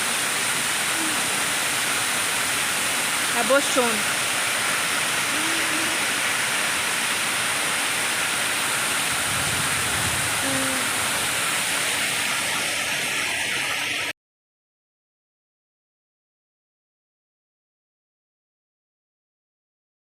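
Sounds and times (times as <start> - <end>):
fountain water splashing: 0.0 - 14.1.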